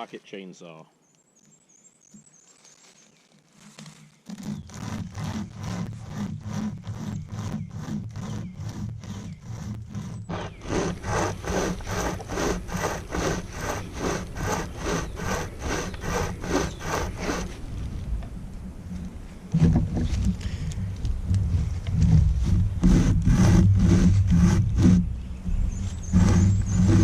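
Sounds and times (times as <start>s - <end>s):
pocket chainsaw sawing log: 3.7s - 17.6s, 21.5s - 25.1s, 25.8s - 27.0s.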